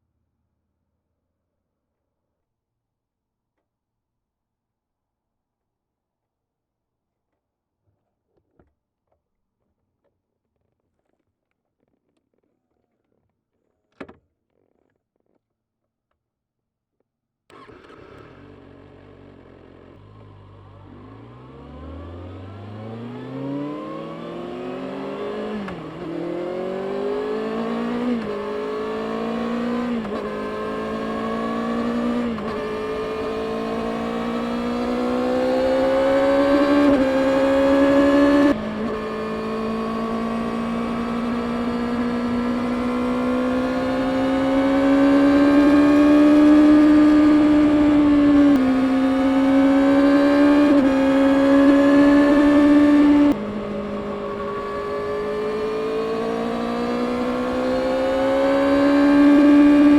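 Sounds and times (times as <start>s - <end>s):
motorcycle engine accelerating: 17.5s - 59.9s.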